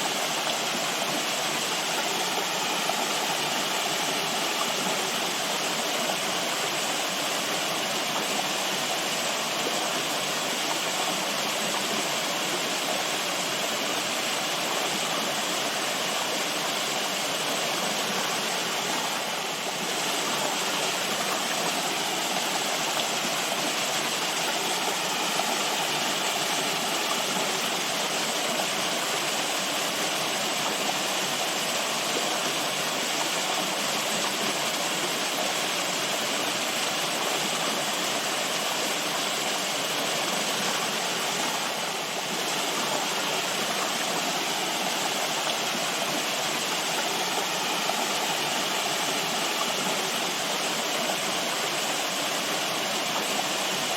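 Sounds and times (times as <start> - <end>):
running water rushing: 0.0 - 53.9.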